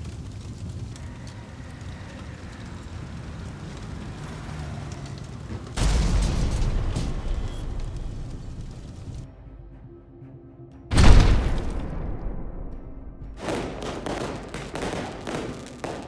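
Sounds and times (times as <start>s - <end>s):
low rumble: 5.7s - 9.3s, 10.9s - 13.4s
loud explosion: 5.8s - 9.2s, 10.9s - 14.9s.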